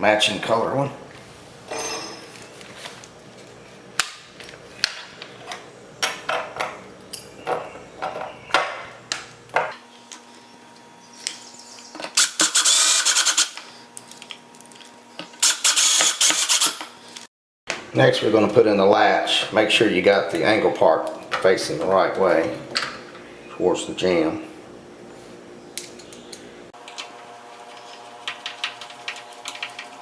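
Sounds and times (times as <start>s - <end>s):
cordless screw gun pulsing: 12.2s - 13.7s, 15.4s - 16.9s.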